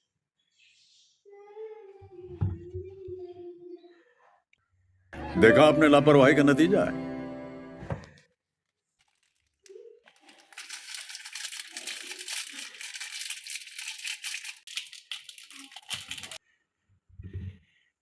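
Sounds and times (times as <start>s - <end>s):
packaging crumpling and tearing: 8.6s - 16.4s.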